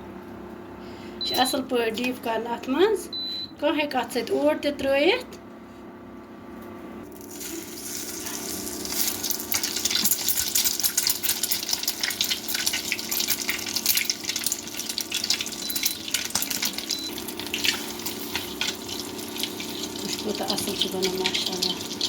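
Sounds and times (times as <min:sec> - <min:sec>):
food sizzling in hot oil: 0:07.1 - 0:22.0.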